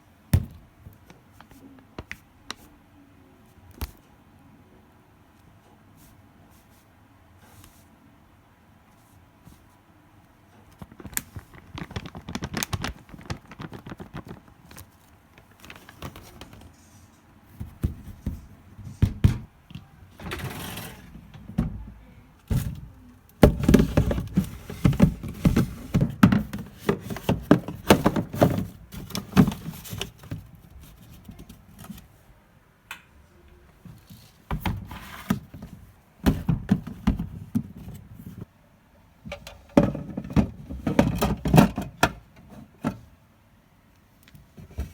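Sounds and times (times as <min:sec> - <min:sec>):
household objects knocking and clattering: 0:21.3 - 0:30.4, 0:34.5 - 0:38.0, 0:39.3 - 0:42.2.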